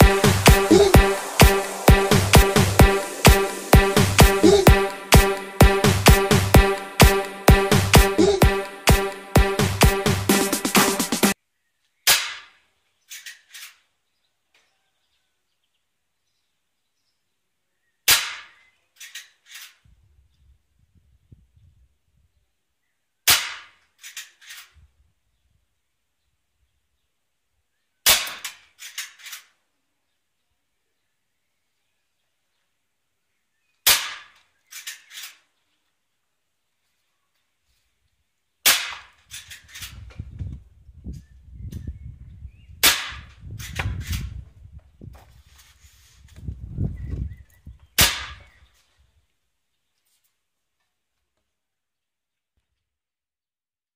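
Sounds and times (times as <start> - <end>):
music: 0.0 - 11.4.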